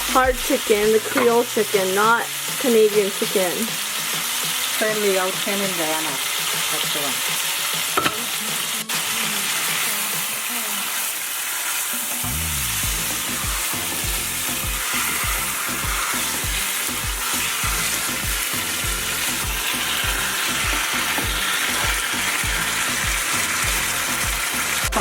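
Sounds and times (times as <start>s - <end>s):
chicken frying in hot oil: 0.0s - 25.0s
low thumping: 12.2s - 14.2s.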